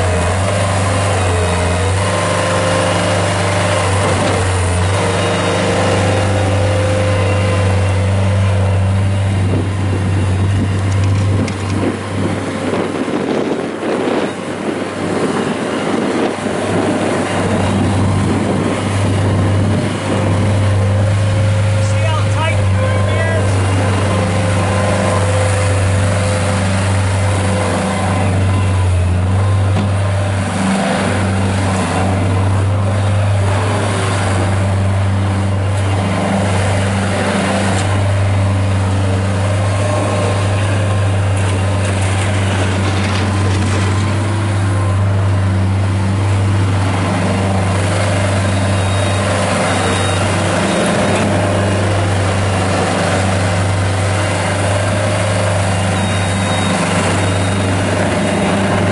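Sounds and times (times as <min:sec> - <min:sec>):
diesel engine droning: 0:00.0 - 0:58.9.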